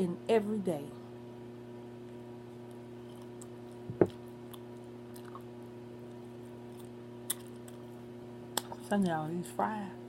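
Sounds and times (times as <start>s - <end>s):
person chewing food: 2.1s - 8.9s.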